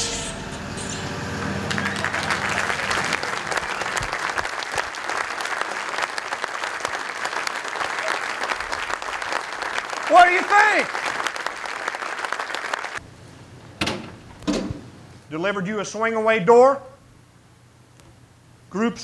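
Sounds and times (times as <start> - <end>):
audience applauding: 1.4 - 13.0.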